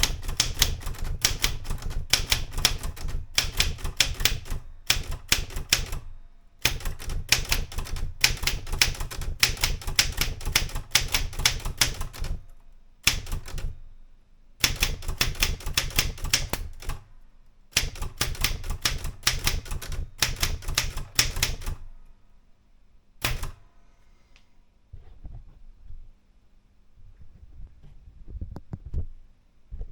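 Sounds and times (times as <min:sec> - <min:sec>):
manual typewriter key strikes: 0:00.0 - 0:13.8, 0:14.6 - 0:17.1, 0:17.7 - 0:22.0, 0:23.2 - 0:23.7.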